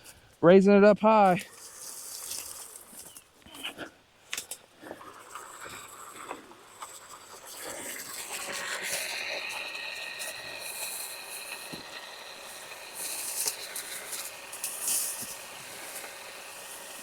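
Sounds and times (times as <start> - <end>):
dry weeds rustling: 1.4 - 6.2.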